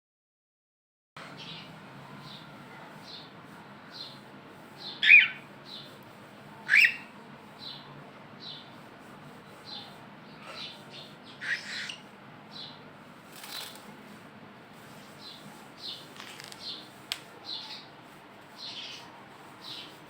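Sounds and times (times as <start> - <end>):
cockatiel chirping: 4.9 - 5.4, 6.7 - 7.1, 11.4 - 12.0
cockatiel squawks: 5.0 - 5.4, 6.7 - 7.1, 11.4 - 12.0.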